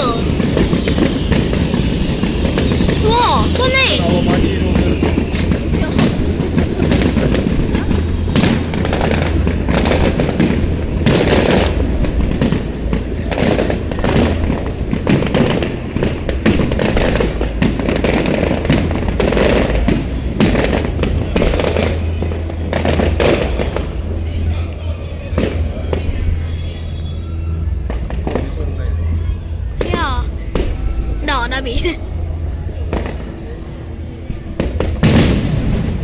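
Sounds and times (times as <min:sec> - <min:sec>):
fireworks bangs and crackles: 0:00.0 - 0:36.0.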